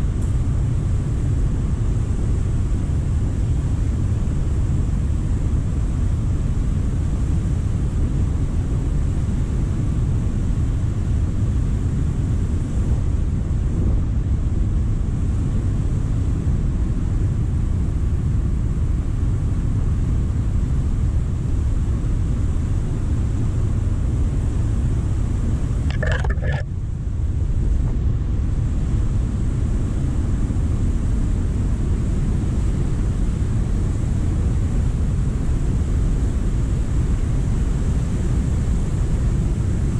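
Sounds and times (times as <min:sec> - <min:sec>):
brief high-pitched sound: 0:25.9 - 0:26.6.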